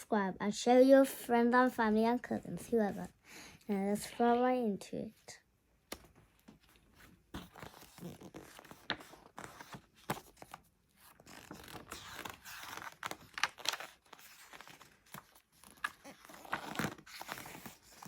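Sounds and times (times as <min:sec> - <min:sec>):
book pages turning: 0:05.9 - 0:18.0.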